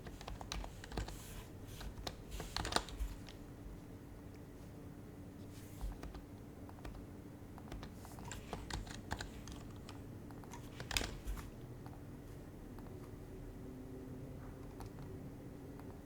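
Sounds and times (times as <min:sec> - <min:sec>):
typing on a keyboard: 0:00.0 - 0:03.4, 0:05.8 - 0:12.0, 0:14.6 - 0:16.0.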